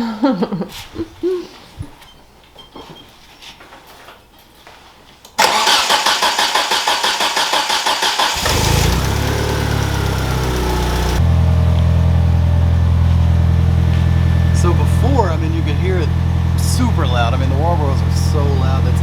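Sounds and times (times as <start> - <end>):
car engine cranking on starter: 5.4 - 19.0
car engine idling: 5.4 - 19.0.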